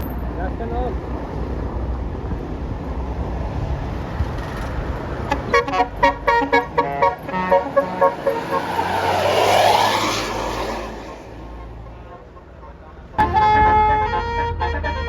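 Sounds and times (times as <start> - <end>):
bus engine and traffic rumble: 0.0 - 15.0
bus horn playing tune: 5.2 - 9.2, 11.0 - 15.0.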